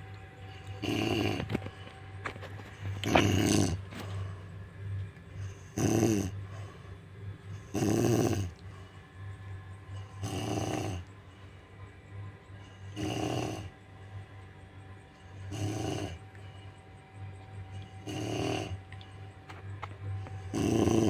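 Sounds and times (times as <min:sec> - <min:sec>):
steady low hum: 0:00.0 - 0:21.0
woman snoring: 0:00.8 - 0:01.6, 0:03.0 - 0:03.8, 0:05.4 - 0:06.4, 0:07.6 - 0:08.5, 0:10.1 - 0:11.1, 0:12.8 - 0:13.7, 0:15.5 - 0:16.2, 0:18.0 - 0:18.8, 0:20.5 - 0:21.0.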